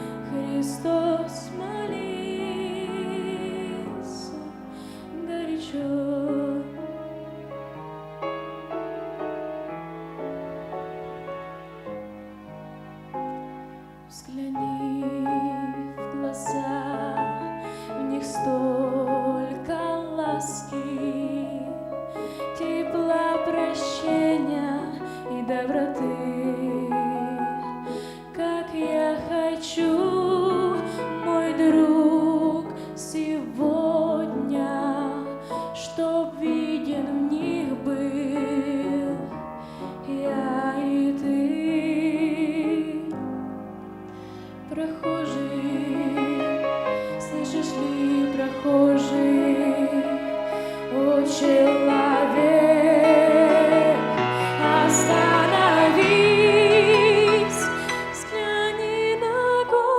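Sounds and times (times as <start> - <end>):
woman singing with vibrato: 0.0 - 6.8, 14.1 - 21.8, 22.6 - 27.7, 44.7 - 59.9
piano accompaniment: 0.0 - 59.9.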